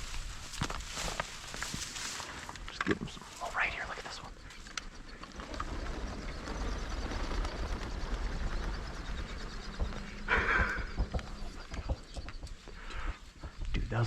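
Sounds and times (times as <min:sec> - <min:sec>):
duck wingbeats rushing: 0:05.3 - 0:12.3.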